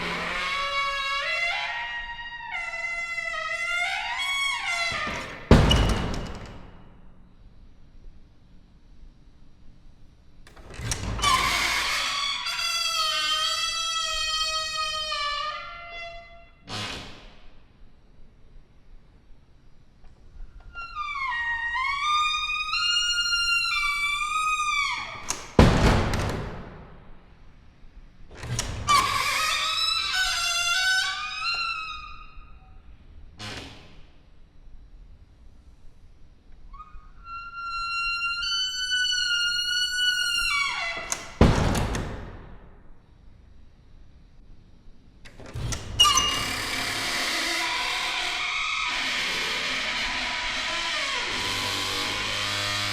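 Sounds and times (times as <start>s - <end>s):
wooden door creaking: 0.0s - 7.2s, 10.5s - 17.7s, 20.0s - 27.6s, 28.3s - 34.4s, 35.5s - 43.0s, 43.7s - 52.9s
loud door thud: 3.8s - 7.0s, 25.1s - 27.2s, 40.4s - 42.8s.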